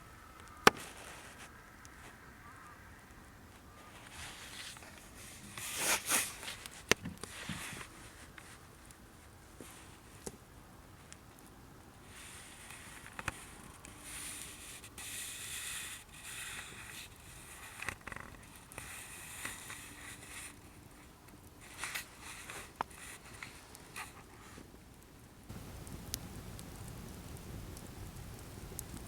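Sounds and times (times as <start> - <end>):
campfire crackling: 0.2 - 15.1, 15.8 - 29.0
rustling and hissing: 0.8 - 2.2, 3.8 - 10.2, 12.0 - 24.7, 25.5 - 29.0
fire popping: 24.8 - 29.0.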